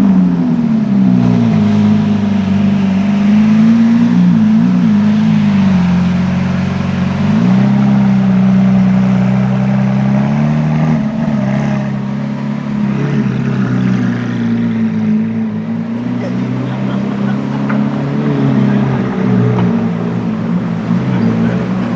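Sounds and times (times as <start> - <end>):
car engine running at low revs: 0.0 - 21.9.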